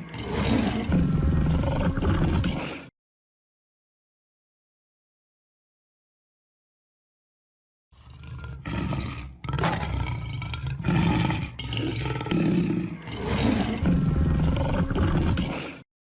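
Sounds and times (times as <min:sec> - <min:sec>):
lion roaring and growling: 0:00.0 - 0:02.9, 0:08.0 - 0:15.8.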